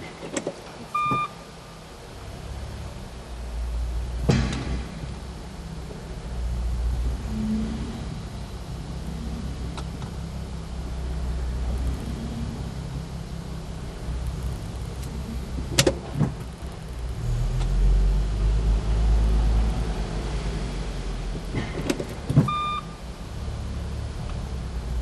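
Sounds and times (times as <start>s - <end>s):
steady low rumble: 0.9s - 25.0s
short beep: 1.0s - 1.4s, 22.5s - 23.0s.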